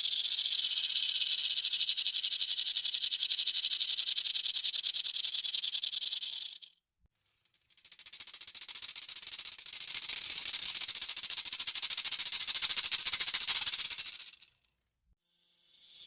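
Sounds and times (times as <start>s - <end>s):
rattlesnake tail rattling: 7.7s - 14.5s.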